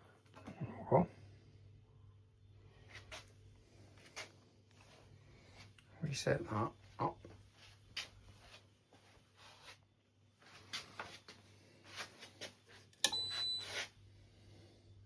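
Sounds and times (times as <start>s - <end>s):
high electronic beep: 13.0s - 13.7s.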